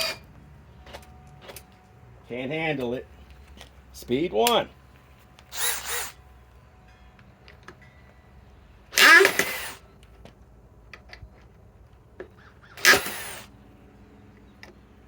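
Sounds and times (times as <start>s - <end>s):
cordless drill motor whirring: 0.0s - 0.3s, 5.4s - 6.2s, 9.0s - 9.8s, 12.8s - 13.5s.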